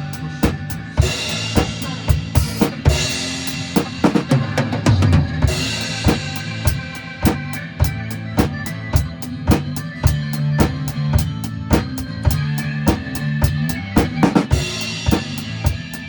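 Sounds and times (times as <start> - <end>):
backing track music: 0.0 - 16.0
drum kit beat: 0.0 - 16.0
cymbal crashes: 1.0 - 4.0.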